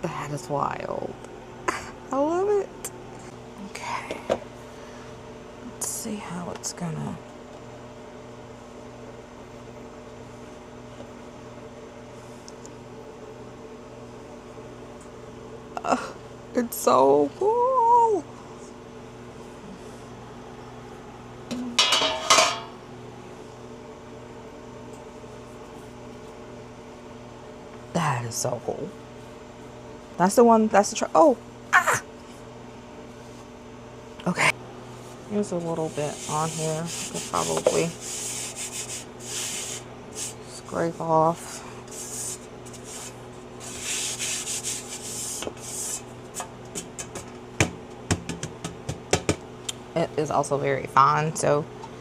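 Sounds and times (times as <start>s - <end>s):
steady low hum: 0.0s - 52.0s
metal tray clattering: 21.8s - 22.7s
taps and knocks on tray: 46.8s - 49.4s.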